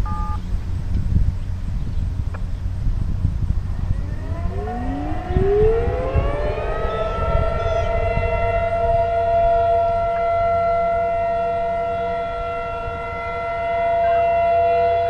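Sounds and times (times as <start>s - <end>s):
wind rumble on microphone: 0.0s - 15.0s
warning siren wailing: 3.2s - 15.0s.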